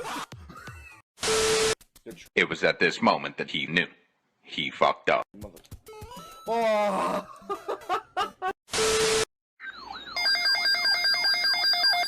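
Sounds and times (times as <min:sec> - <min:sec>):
repeating ringing tone: 0:09.6 - 0:12.0.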